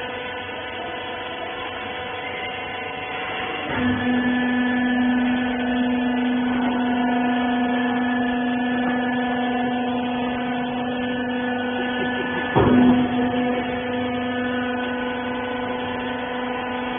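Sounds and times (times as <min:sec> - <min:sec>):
machine motor humming: 0:00.0 - 0:16.9
loud clunk: 0:11.8 - 0:14.9.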